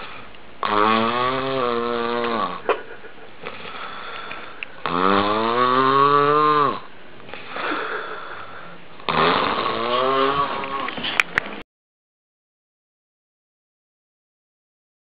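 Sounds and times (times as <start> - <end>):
man snoring loudly: 0.6 - 2.6, 3.8 - 6.9, 7.5 - 11.0
soft breath: 3.5 - 4.8, 7.3 - 8.9.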